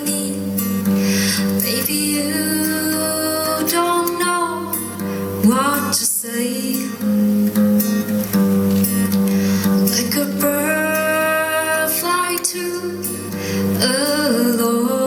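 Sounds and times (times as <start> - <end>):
acoustic guitar strumming: 0.0 - 15.0
person singing: 1.3 - 7.0, 9.8 - 15.0.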